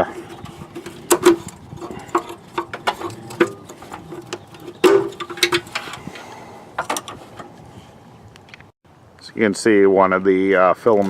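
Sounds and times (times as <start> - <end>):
plastic scraping: 0.0 - 7.8.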